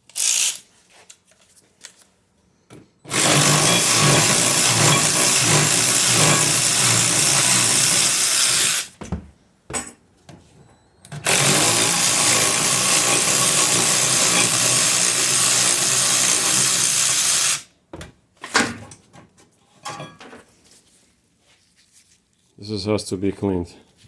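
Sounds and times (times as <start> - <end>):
handheld power tool running: 3.1 - 9.0, 11.2 - 17.7.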